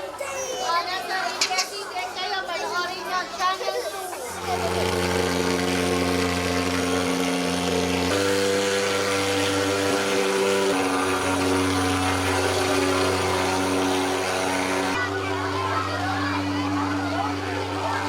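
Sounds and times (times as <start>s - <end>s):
small engine droning: 4.3s - 18.0s.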